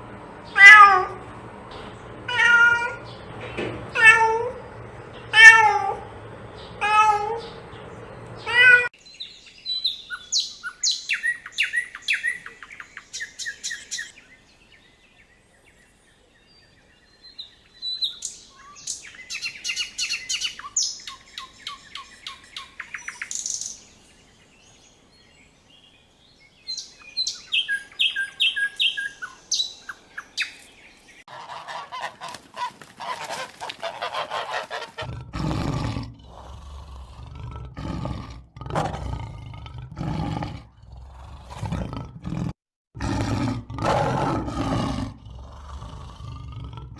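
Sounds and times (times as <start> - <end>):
cat meowing: 0.6 - 1.2, 2.3 - 3.0, 3.9 - 4.6, 5.3 - 6.0, 6.8 - 7.4, 8.5 - 8.9
small bird chirping: 8.4 - 14.2, 17.3 - 23.9, 26.4 - 31.2.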